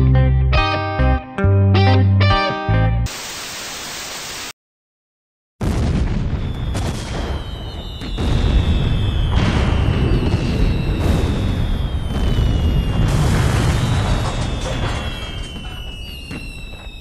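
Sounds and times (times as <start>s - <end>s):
distorted electric guitar music: 0.0s - 3.5s
television static hiss: 3.1s - 4.5s
faint falling high whistle: 6.4s - 17.0s.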